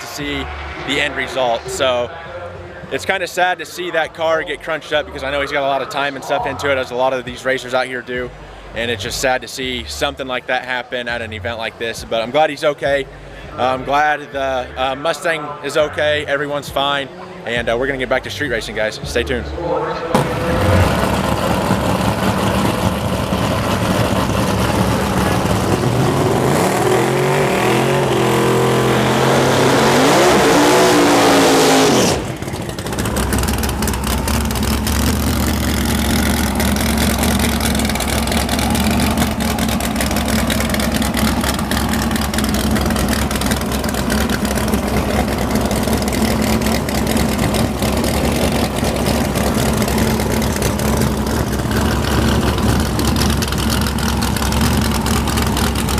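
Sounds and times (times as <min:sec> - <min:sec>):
race car engine revving: 0:00.0 - 0:02.1, 0:19.8 - 0:55.9
lower engine note with crackle: 0:20.0 - 0:55.9.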